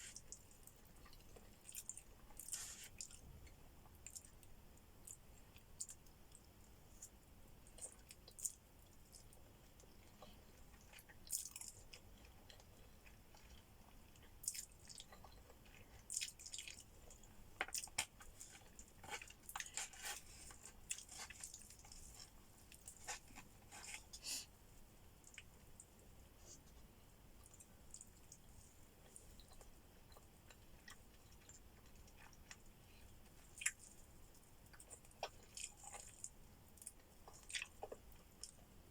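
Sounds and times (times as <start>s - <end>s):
person chewing: 5.0s - 24.5s, 27.4s - 38.6s.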